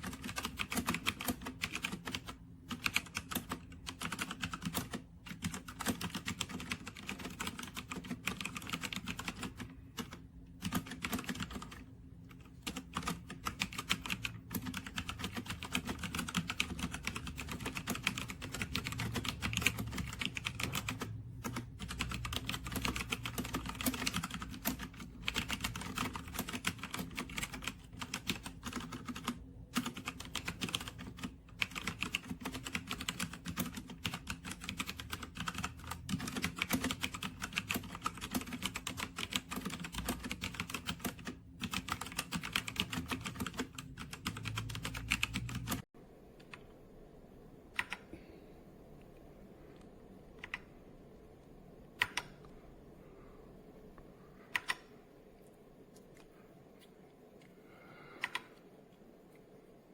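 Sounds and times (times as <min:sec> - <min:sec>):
mechanical keyboard keys clacking: 0:00.0 - 0:45.8, 0:52.0 - 0:52.4, 0:54.5 - 0:54.9, 0:58.2 - 0:58.5.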